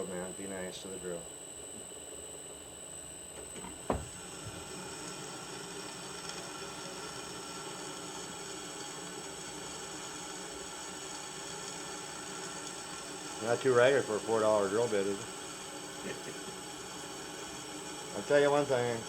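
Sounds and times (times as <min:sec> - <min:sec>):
electric drill cutting steel: 0:03.4 - 0:19.0.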